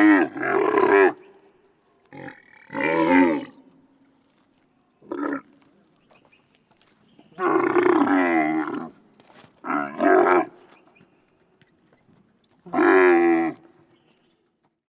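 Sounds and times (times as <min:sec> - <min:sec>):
camel grunting: 0:00.0 - 0:01.3, 0:02.1 - 0:03.7, 0:05.0 - 0:05.8, 0:07.4 - 0:10.8, 0:12.5 - 0:13.8.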